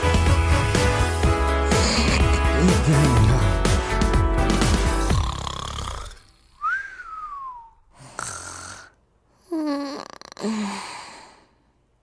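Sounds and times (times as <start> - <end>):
music: 0.0 - 5.9
person snoring: 1.7 - 3.7, 5.0 - 6.7, 7.9 - 11.5
whistled breath: 6.6 - 7.9.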